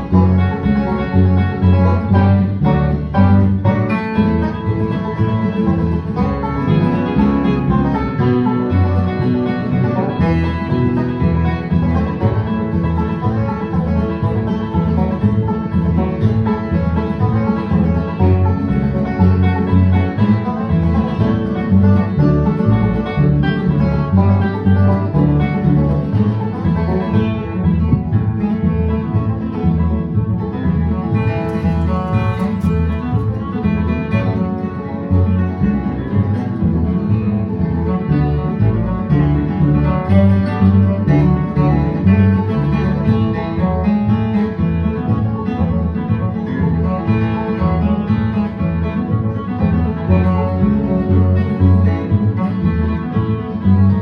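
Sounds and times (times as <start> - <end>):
bluegrass banjo and guitar music: 0.0 - 54.0.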